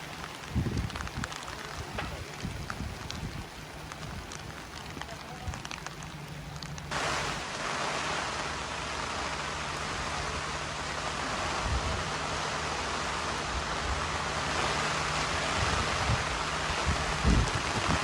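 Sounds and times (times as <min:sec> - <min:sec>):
wind buffeting microphone: 0:00.0 - 0:07.0, 0:11.0 - 0:12.5, 0:13.4 - 0:18.0
rain hissing: 0:00.0 - 0:18.0.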